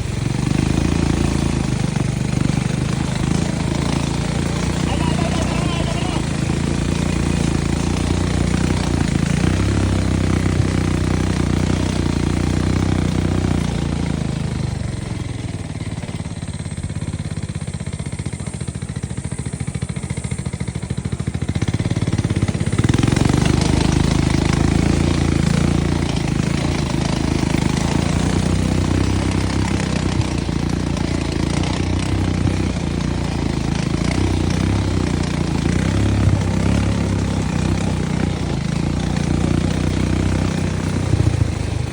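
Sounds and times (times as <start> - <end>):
atv engine running: 0.0 - 41.9.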